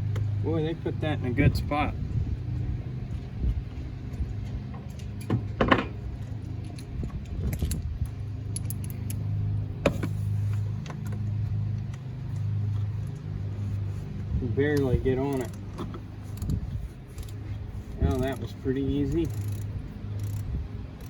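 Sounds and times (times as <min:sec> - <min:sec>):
steady low hum: 0:00.0 - 0:21.0
wrench clicking on bolt: 0:08.5 - 0:09.2, 0:14.7 - 0:15.6, 0:17.2 - 0:17.4, 0:19.2 - 0:20.5.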